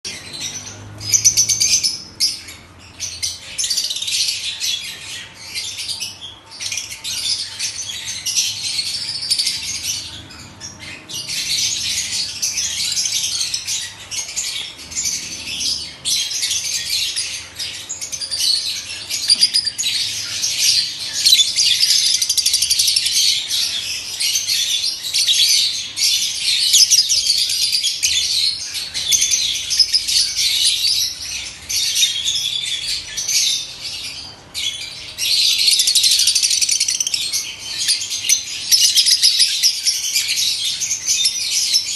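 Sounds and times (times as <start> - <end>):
lovebirds chattering and screeching: 0.1 - 41.9.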